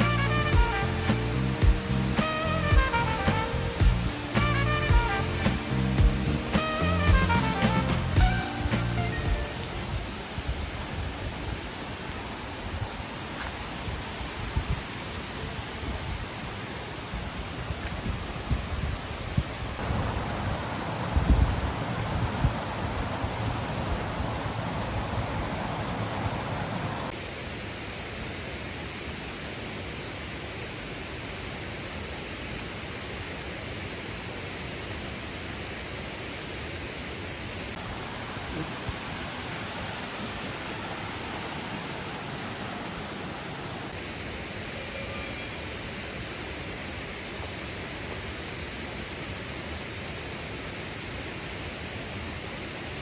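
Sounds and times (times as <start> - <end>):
waterfall rushing: 0.0 - 17.7, 19.8 - 27.2, 37.4 - 44.8.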